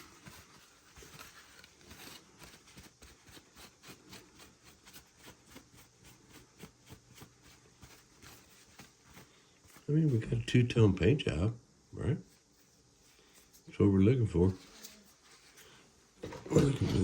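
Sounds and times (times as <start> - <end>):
faint quick rubbing strokes: 12.2 - 13.7, 14.4 - 16.0.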